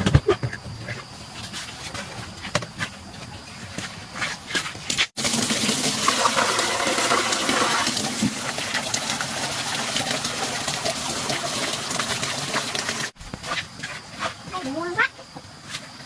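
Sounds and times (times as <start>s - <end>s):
water gushing: 5.2s - 13.2s.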